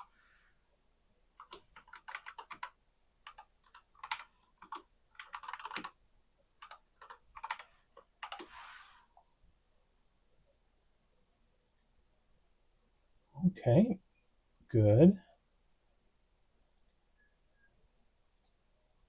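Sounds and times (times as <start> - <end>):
keyboard typing: 1.4 - 6.0, 6.6 - 8.6
brief hiss: 8.4 - 9.1.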